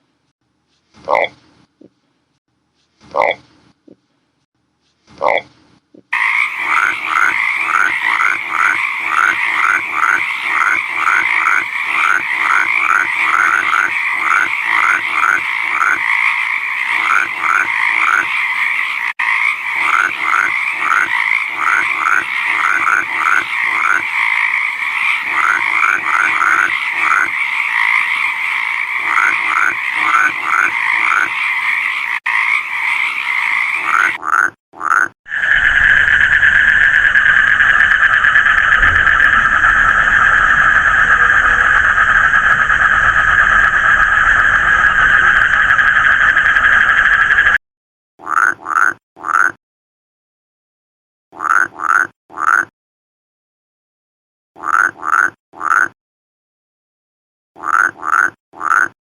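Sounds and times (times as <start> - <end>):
shrill frog chorus: 6.1 - 47.6
frog calling in rapid notes: 6.2 - 47.6, 48.2 - 49.5, 51.4 - 52.7, 54.6 - 55.9, 57.6 - 58.9
frog chorus: 6.2 - 47.6, 48.2 - 49.5, 51.4 - 52.6, 54.6 - 55.8, 57.6 - 58.9.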